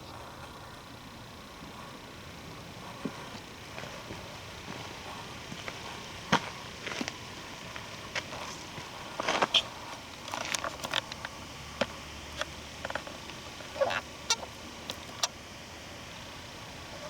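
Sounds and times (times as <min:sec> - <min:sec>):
footsteps crunching on forest floor: 0:02.8 - 0:12.0.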